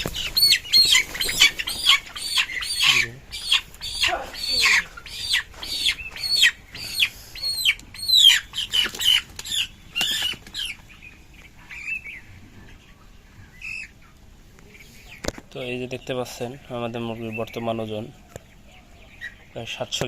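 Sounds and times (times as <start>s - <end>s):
chickens squawking in distress: 0.0s - 15.3s.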